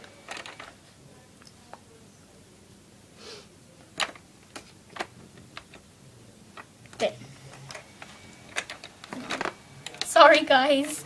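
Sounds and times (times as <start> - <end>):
plastic parts clicking and tapping: 0.3 - 0.8, 3.9 - 5.8, 6.5 - 10.4.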